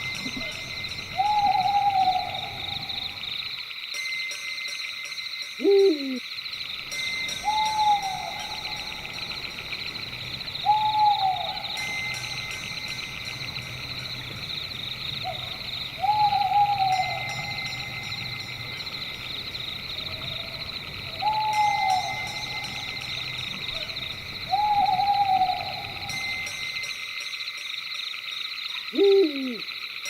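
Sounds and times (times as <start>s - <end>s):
high pulsing insect chorus: 0.0s - 30.0s
owl hooting: 0.2s - 3.3s, 5.6s - 6.2s, 7.4s - 9.4s, 10.6s - 11.9s, 15.2s - 17.9s, 20.0s - 26.2s, 28.9s - 29.7s.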